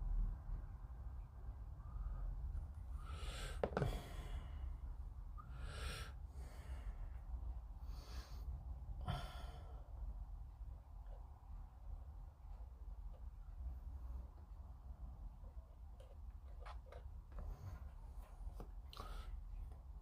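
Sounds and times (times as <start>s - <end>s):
low steady hum: 0.0s - 20.0s
person breathing out heavily: 7.8s - 10.0s.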